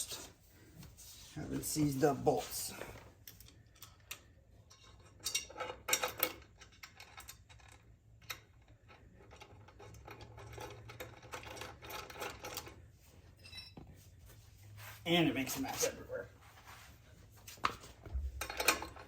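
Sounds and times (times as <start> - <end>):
metal bolts clicking and rattling: 3.2 - 12.8, 18.1 - 19.0.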